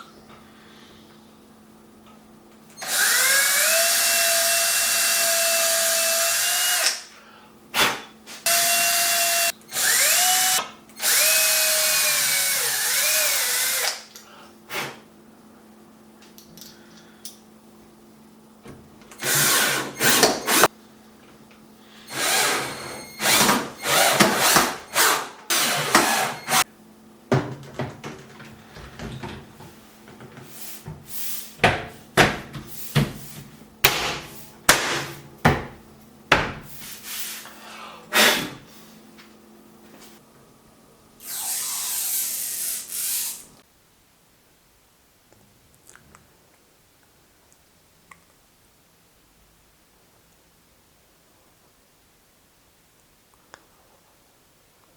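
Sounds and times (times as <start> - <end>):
electric drill whining: 2.8 - 7.0, 8.5 - 14.0, 22.1 - 26.6, 41.2 - 43.5.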